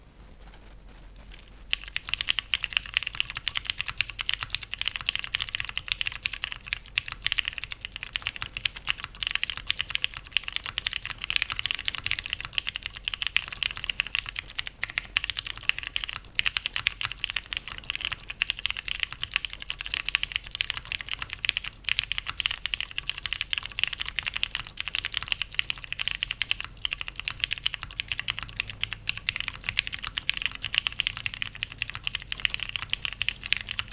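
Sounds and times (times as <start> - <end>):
fast typing on mechanical keyboard: 1.3 - 33.9.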